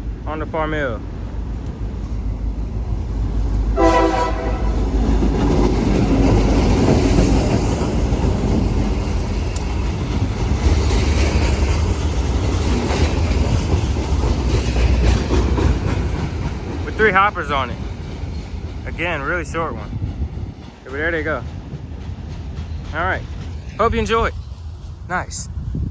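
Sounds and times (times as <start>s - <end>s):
locomotive engine rumble: 0.0s - 25.9s
train wheels clacking over rail joints: 3.4s - 23.9s
train horn blast: 3.7s - 5.0s.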